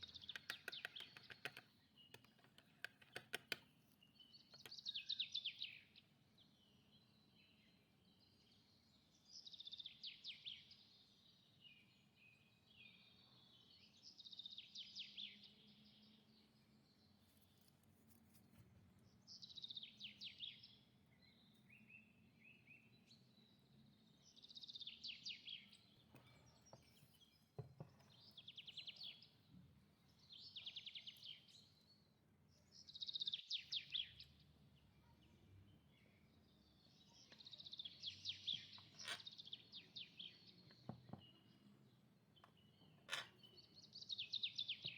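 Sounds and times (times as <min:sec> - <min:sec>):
small bird chirping: 0:00.0 - 0:07.7, 0:19.1 - 0:44.9.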